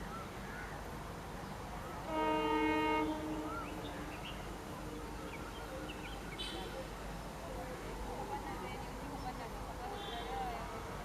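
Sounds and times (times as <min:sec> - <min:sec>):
locomotive horn blast: 0:02.1 - 0:05.1.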